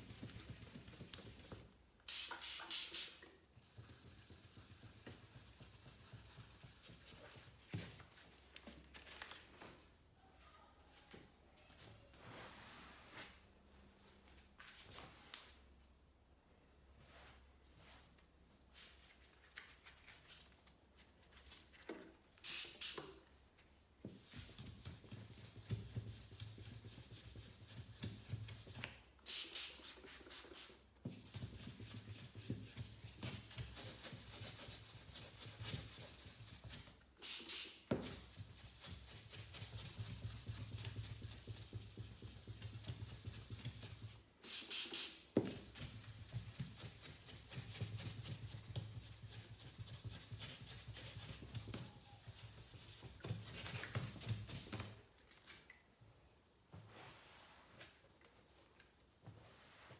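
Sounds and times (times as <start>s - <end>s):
short hissy bursts: 2.1s - 3.2s.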